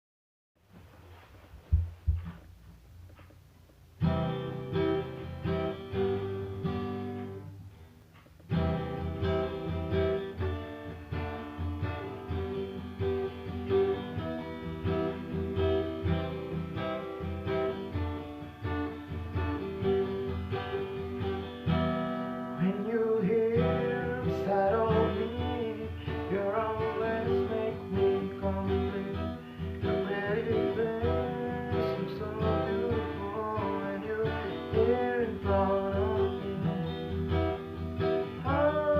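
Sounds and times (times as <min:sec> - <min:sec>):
acoustic guitar music: 0:00.7 - 0:38.9
person singing: 0:22.6 - 0:37.2, 0:38.3 - 0:38.9.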